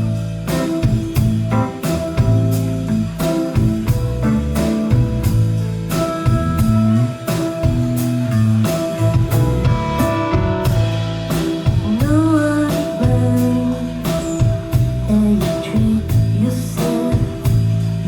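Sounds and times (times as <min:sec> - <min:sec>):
bass guitar: 0:00.0 - 0:18.0
guitar: 0:00.0 - 0:18.0
drum beat: 0:03.2 - 0:13.4
person singing: 0:11.8 - 0:18.0.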